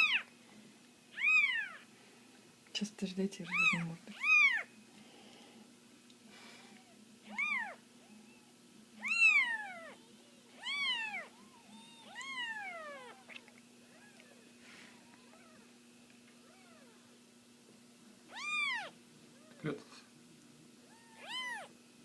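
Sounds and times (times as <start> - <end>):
kitten meowing: 0.0 - 0.3, 1.1 - 1.8, 3.5 - 4.7, 7.3 - 10.0, 10.6 - 14.4, 16.4 - 17.0, 18.3 - 19.6, 20.9 - 21.7.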